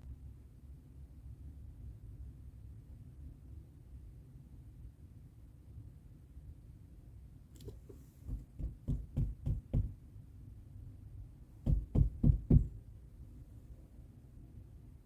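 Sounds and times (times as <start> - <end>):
dull knocking: 8.2 - 10.0, 11.6 - 12.8.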